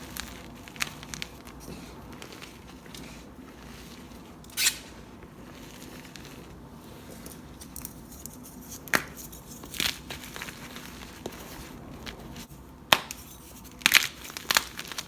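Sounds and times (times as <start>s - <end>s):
chalk crumbling crackles: 0.0s - 15.0s
chalk crunching: 0.0s - 15.0s.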